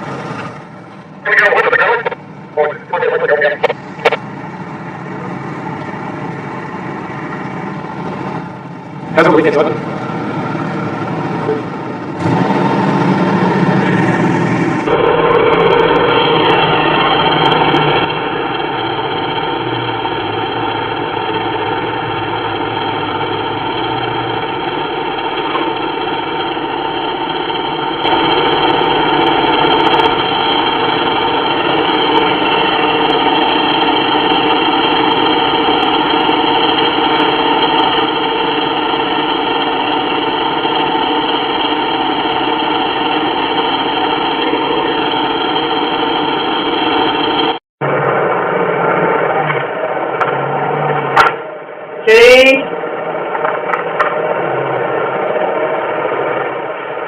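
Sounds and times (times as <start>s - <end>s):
chainsaw engine running: 9.1s - 47.6s.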